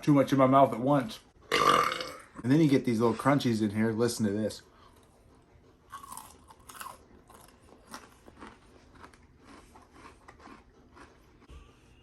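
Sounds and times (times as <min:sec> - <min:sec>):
person chewing crunchy food: 0:05.8 - 0:11.9.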